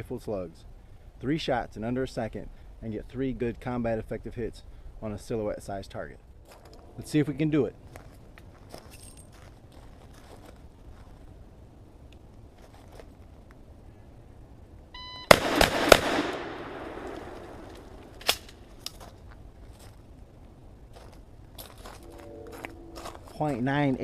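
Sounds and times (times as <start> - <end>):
shot timer beep: 15.0 - 15.4
shotgun shots with echo: 15.3 - 18.4.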